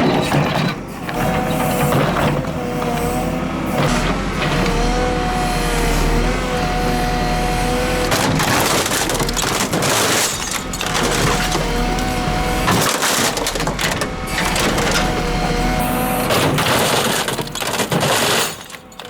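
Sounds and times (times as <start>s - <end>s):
diesel engine under hydraulic load: 0.0s - 19.0s
sheet metal crunching: 7.9s - 16.8s.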